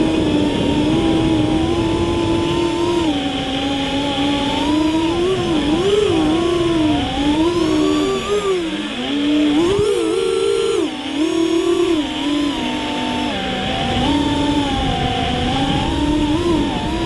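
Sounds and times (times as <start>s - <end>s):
quadcopter motors whining: 0.0s - 17.0s.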